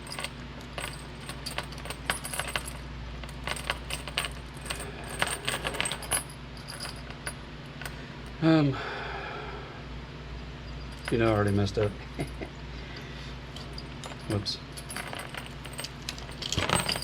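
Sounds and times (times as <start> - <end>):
metal chain clinking and rattling: 0.0 - 8.0, 10.6 - 12.4, 13.5 - 17.0
steady low hum: 0.0 - 17.0.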